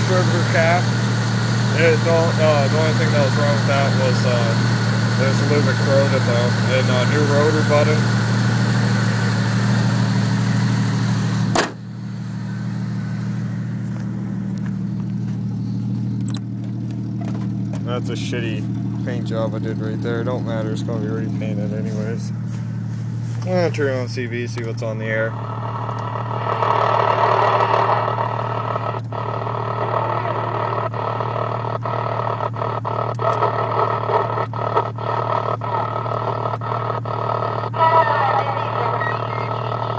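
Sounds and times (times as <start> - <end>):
radio static hissing: 0.0 - 1.0, 1.7 - 8.1, 25.3 - 39.9
car engine idling: 0.0 - 39.9
thump: 11.5 - 11.8.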